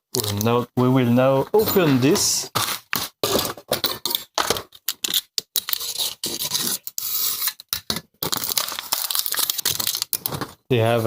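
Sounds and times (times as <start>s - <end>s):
packaging scraping and rubbing: 1.6s - 10.7s.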